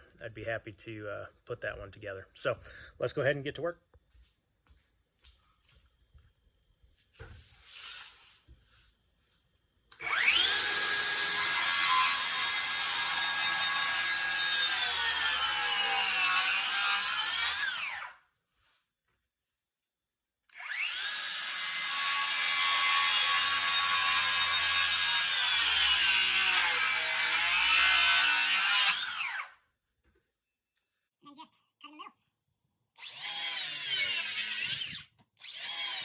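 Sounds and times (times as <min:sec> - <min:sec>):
circular saw cutting wood: 0:10.0 - 0:18.2, 0:20.6 - 0:29.6, 0:33.0 - 0:36.0.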